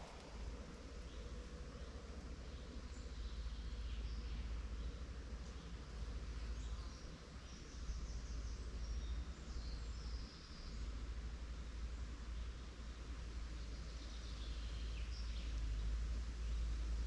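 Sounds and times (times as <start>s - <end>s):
steady low rumble: 0.0s - 6.6s
small birds chirping and trilling: 0.9s - 11.1s, 13.5s - 16.9s.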